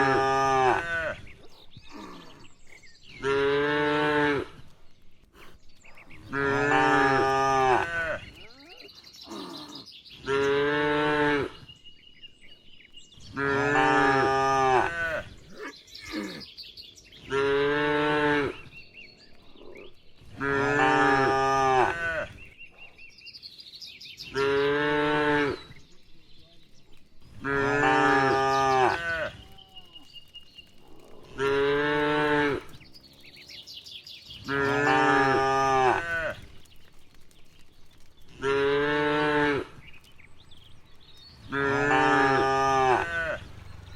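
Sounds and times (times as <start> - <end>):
cattle mooing: 6.3 - 8.7, 27.4 - 29.9, 34.5 - 36.4, 41.5 - 43.9.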